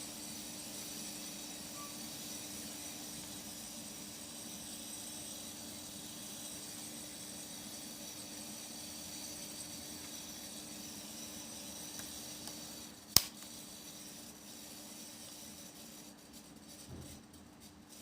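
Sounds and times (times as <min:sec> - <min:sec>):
faint electrical hum: 0:00.0 - 0:18.0
thin high whines: 0:01.2 - 0:12.9
sharp click: 0:13.2 - 0:13.5.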